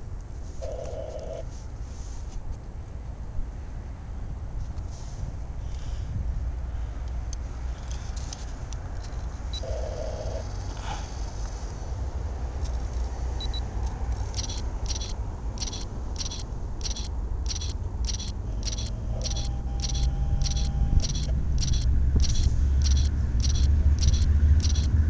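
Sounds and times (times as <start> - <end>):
train low rumble: 4.2 - 25.0.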